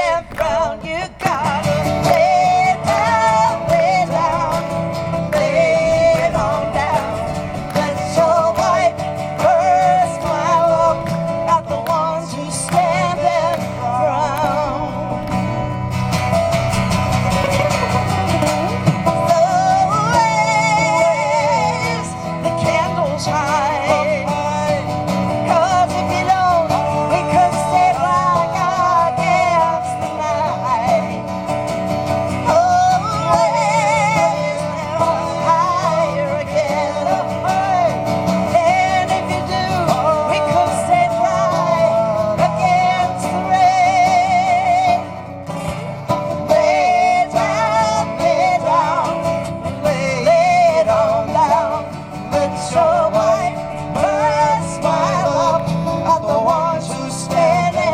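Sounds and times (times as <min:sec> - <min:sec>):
woman singing with vibrato: 0:00.0 - 0:24.8
guitar accompaniment: 0:00.0 - 0:57.9.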